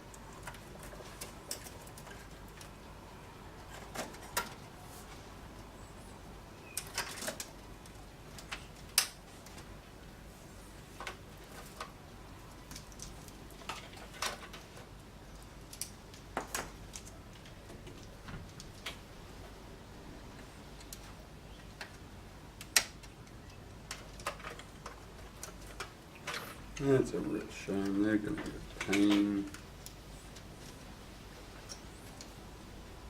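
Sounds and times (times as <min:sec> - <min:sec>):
clicks and taps of plastic connectors: 0:22.6 - 0:26.9.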